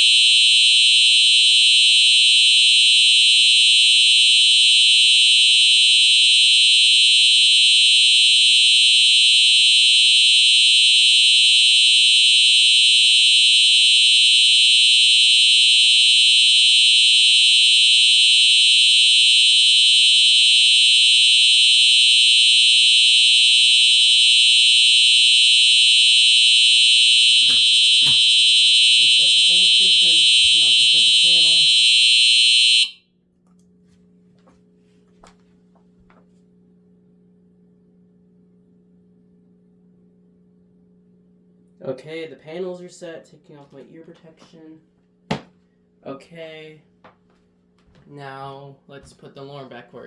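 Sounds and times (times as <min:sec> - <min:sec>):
fire alarm high-pitched tone: 0:00.0 - 0:33.1.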